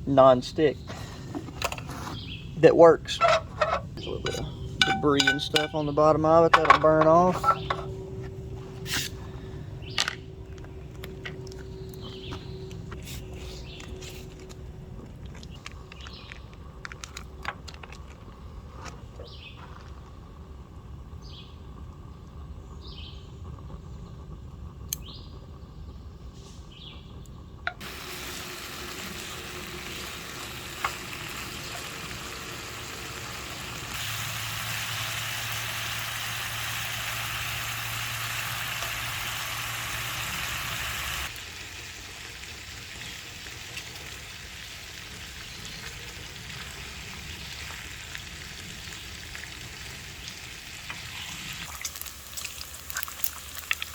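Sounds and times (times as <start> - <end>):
bacon sizzling in a frying pan: 3.6 - 5.7, 27.8 - 53.9.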